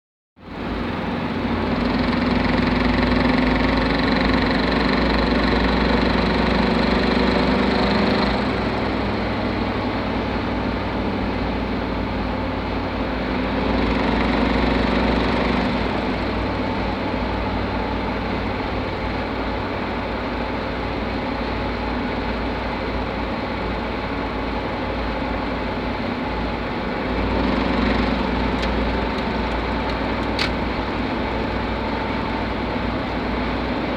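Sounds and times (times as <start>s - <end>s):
vehicle engine knocking: 1.4s - 6.9s, 27.2s - 32.3s.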